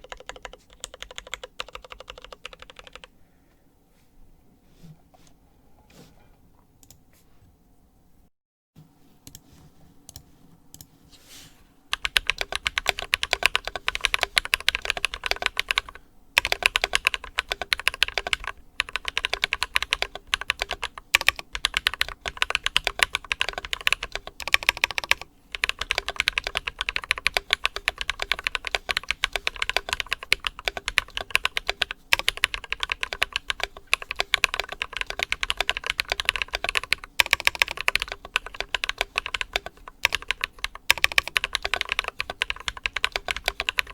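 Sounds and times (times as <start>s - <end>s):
mechanical keyboard typing: 0.0s - 3.1s, 11.9s - 43.9s.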